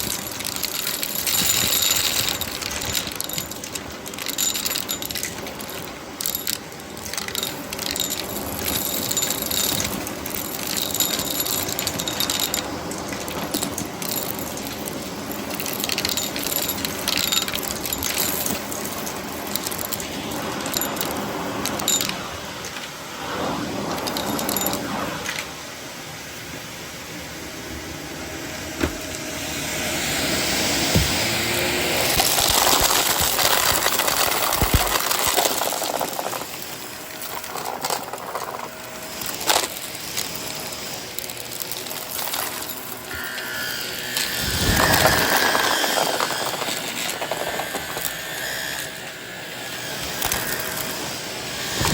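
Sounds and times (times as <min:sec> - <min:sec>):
debris rattling inside vacuum: 0:00.0 - 0:22.3, 0:30.6 - 0:49.3
vacuum cleaner running: 0:27.1 - 0:35.2.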